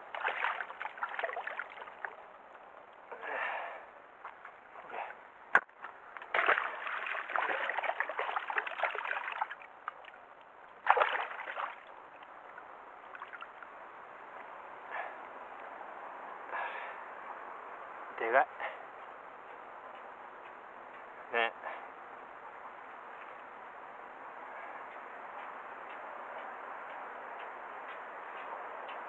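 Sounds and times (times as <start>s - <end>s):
water splashing: 0.0s - 2.4s, 6.3s - 13.7s.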